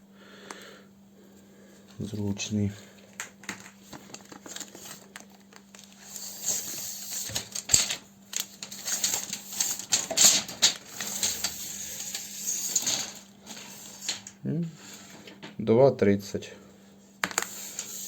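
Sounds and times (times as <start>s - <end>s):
power cord clicks and rustling: 7.1s - 11.6s.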